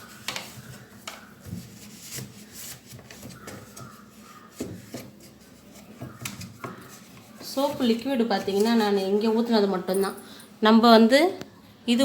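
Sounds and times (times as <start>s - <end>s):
cloth rubbing on plastic: 0.0s - 8.9s.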